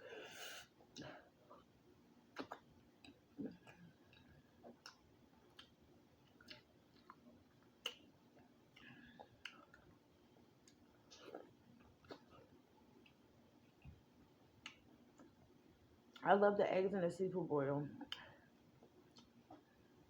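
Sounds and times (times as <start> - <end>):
mouth clicks chewing egg: 2.3 - 9.9.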